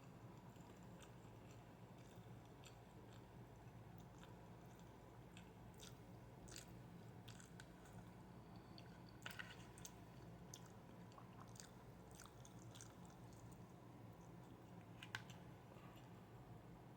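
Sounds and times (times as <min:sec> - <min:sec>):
person chewing food: 0:00.0 - 0:16.2
low steady hum: 0:00.0 - 0:16.9.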